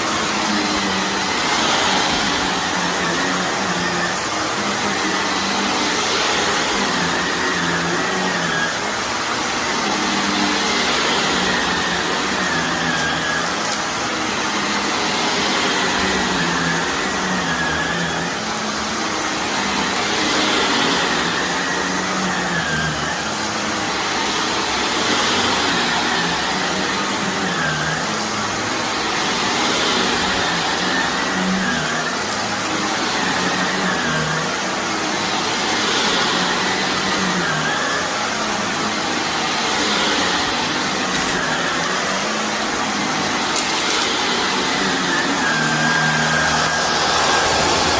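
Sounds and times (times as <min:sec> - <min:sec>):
vacuum cleaner running: 0:00.0 - 0:47.9.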